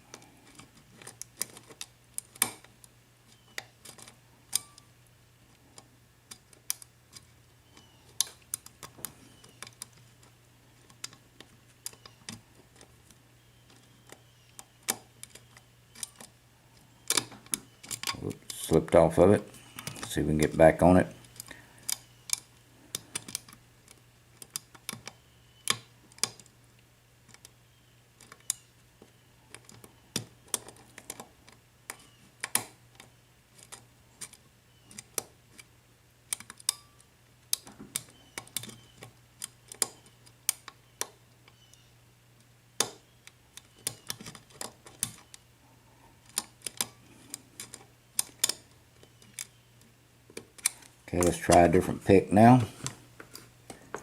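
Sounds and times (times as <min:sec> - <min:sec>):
lock pick metallic clicks: 0:36.3 - 0:41.8, 0:46.2 - 0:49.6.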